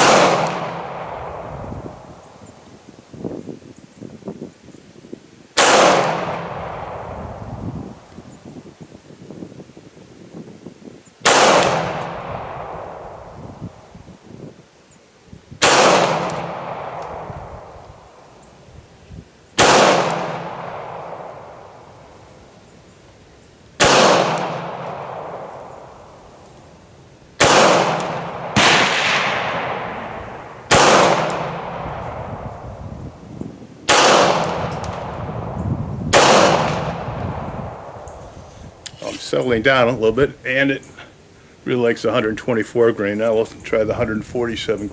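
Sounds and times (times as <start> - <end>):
pistol shots echoing: 0.0 - 1.5, 5.6 - 7.1, 11.2 - 13.1, 15.6 - 17.7, 19.6 - 21.8, 23.8 - 26.1, 27.4 - 32.3, 33.9 - 35.5, 36.1 - 38.0.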